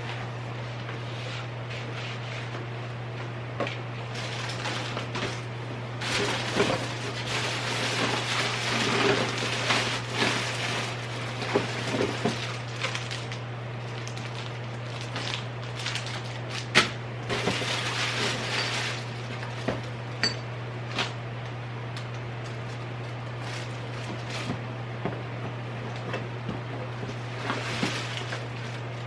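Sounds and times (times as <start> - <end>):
household items rustling and knocking: 6.0 - 13.1, 17.3 - 20.4, 23.4 - 28.8.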